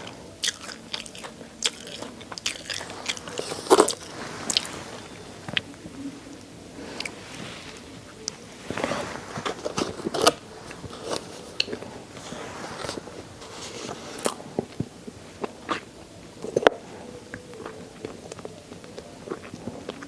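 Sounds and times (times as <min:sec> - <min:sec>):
bones crunching between teeth: 0:00.0 - 0:04.7.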